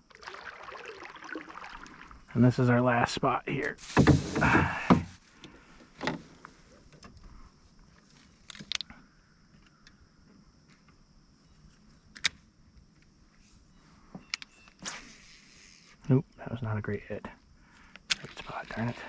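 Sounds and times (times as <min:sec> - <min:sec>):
faint steady high hiss: 0:00.0 - 0:08.6, 0:11.2 - 0:19.0
fishing tackle clicks and knocks: 0:08.4 - 0:08.9.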